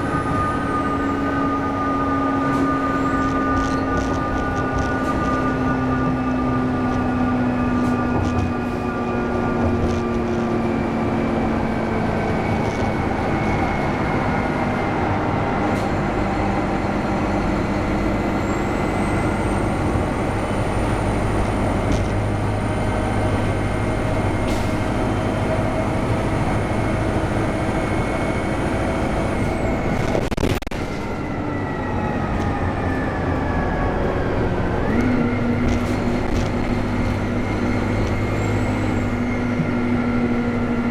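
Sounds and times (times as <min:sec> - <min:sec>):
high turbo whistle: 0:00.0 - 0:09.6
bus diesel engine running: 0:00.0 - 0:40.9.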